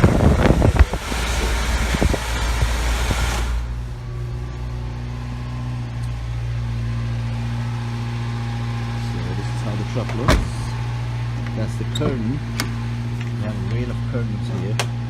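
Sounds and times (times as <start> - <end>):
loud rushing noise: 0.0 - 5.7
car engine idling: 0.0 - 15.0.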